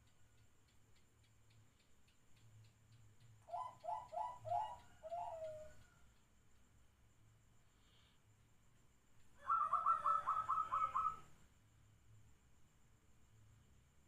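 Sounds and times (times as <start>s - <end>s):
dove cooing: 3.5s - 5.9s, 9.4s - 11.3s.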